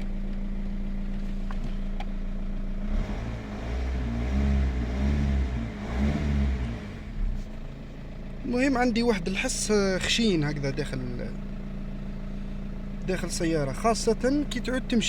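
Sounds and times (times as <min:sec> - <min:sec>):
diesel engine idling: 0:00.0 - 0:15.0
diesel engine revving: 0:02.6 - 0:07.7.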